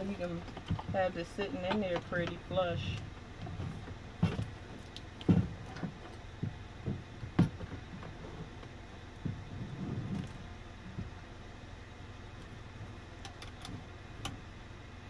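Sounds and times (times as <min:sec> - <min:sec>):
sharp knocks and clicks: 0:03.0 - 0:11.2.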